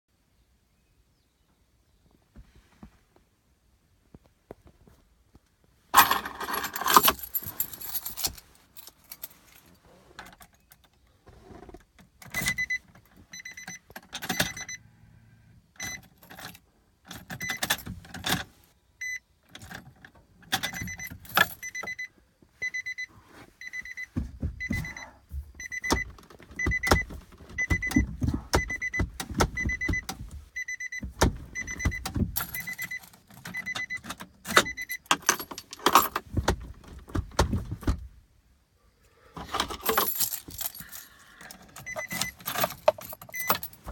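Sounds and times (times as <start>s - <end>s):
keys jangling: 6.0s - 9.8s, 20.6s - 21.8s, 31.2s - 36.3s, 39.6s - 43.9s
vehicle warning chime beeping: 12.4s - 15.0s, 15.8s - 16.1s, 19.0s - 19.3s, 20.6s - 35.4s, 41.8s - 43.9s.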